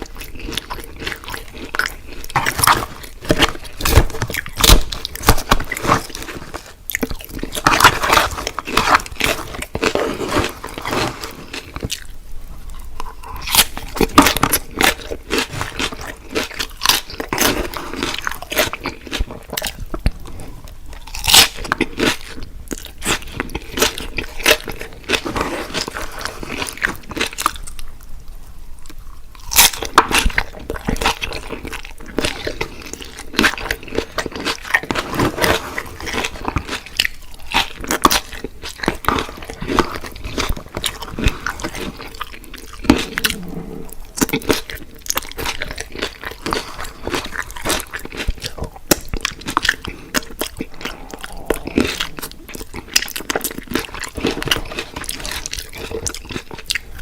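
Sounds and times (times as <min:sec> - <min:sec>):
wet chewing: 0:00.0 - 0:27.9, 0:28.8 - 0:57.0
crunching bites of fried food: 0:13.0 - 0:27.8, 0:29.3 - 0:57.0.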